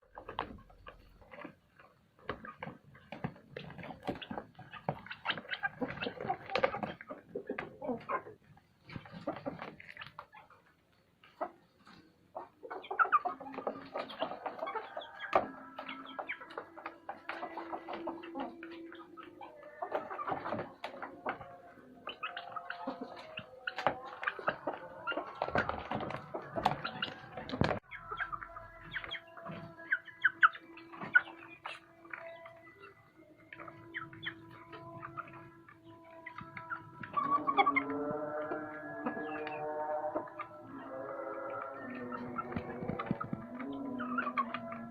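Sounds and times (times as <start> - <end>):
chickens clucking: 0.0 - 44.9.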